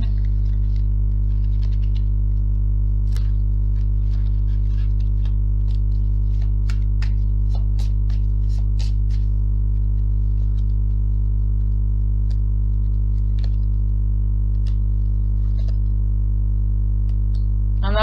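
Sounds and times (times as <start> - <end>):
electrical mains hum: 0.0 - 18.0
cards clicking and tapping: 3.0 - 9.3.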